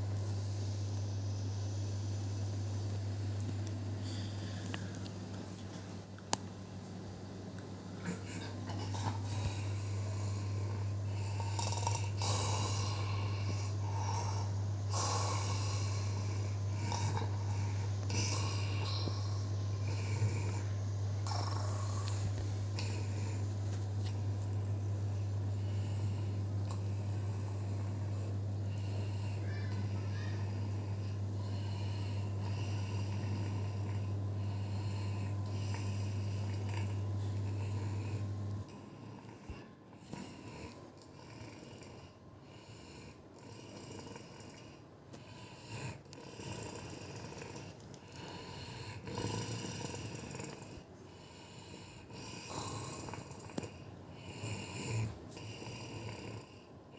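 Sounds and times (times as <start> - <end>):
steady low hum: 0.0 - 56.9
woman snoring loudly: 8.1 - 23.4, 25.5 - 38.3, 40.2 - 56.7.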